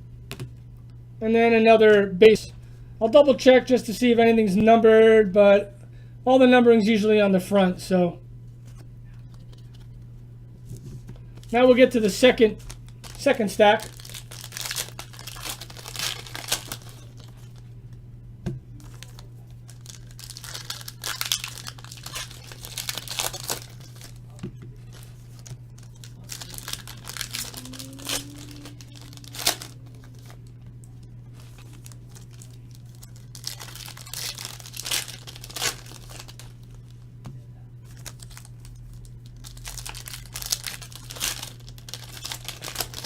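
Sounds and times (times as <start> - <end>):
steady low hum: 0.0 - 43.0
plastic wrapping crinkling and tearing: 11.2 - 17.6, 18.8 - 37.0, 37.8 - 43.0.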